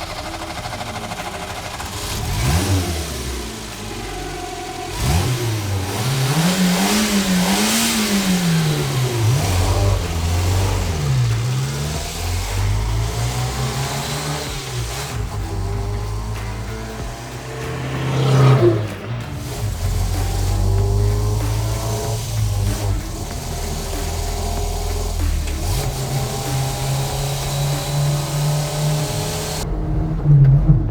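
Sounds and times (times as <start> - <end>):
car engine idling and revving: 0.0 - 30.9.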